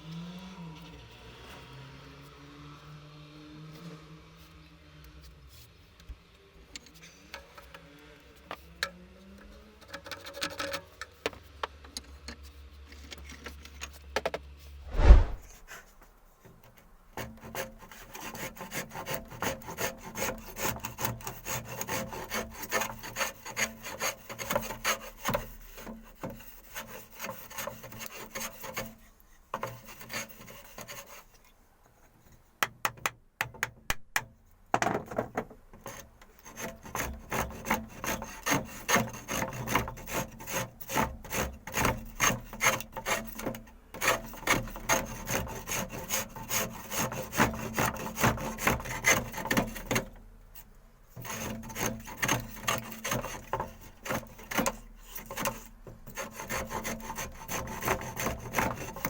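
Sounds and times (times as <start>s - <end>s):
loud thump: 14.9s - 15.6s
rasping strokes on wood: 17.2s - 29.0s, 35.9s - 50.1s, 51.2s - 59.0s.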